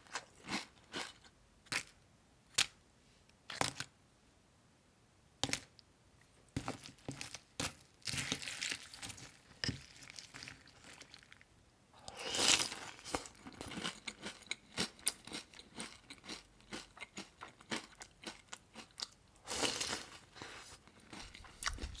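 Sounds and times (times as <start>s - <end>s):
corn flakes crunching: 6.7s - 11.4s, 12.1s - 22.0s.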